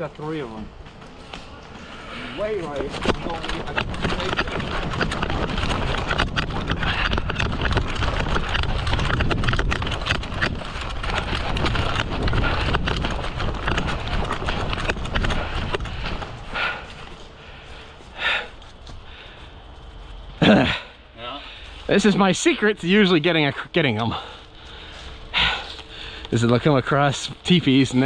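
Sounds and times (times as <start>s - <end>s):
gear rattling and rustling: 0.0s - 28.0s
low rumble of movement: 0.0s - 28.0s
running footsteps: 0.1s - 28.0s.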